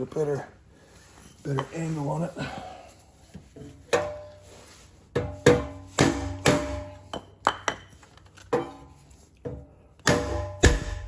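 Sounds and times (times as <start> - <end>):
mallet striking wood block: 5.4 - 6.9, 10.1 - 11.0.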